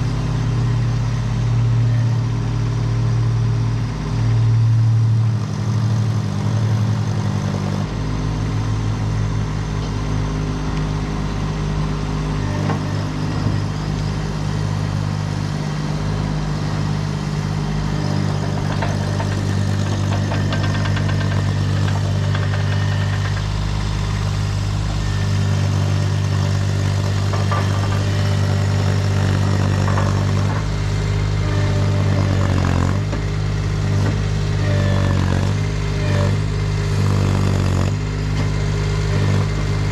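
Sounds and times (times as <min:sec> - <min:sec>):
diesel engine running: 0:00.0 - 0:39.9
knocks and clatter: 0:18.2 - 0:23.6, 0:27.1 - 0:28.3, 0:29.2 - 0:30.7.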